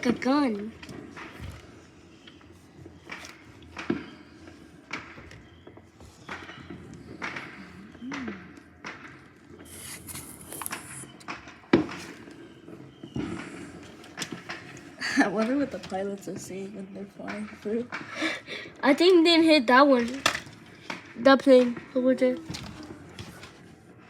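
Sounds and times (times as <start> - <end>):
distant fireworks bangs: 0.0 - 24.0
high firework hiss: 9.6 - 11.2.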